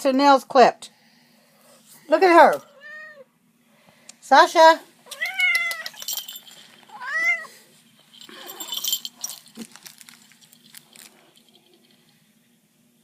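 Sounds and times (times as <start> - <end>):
cat meowing: 2.8 - 3.3, 6.9 - 7.6.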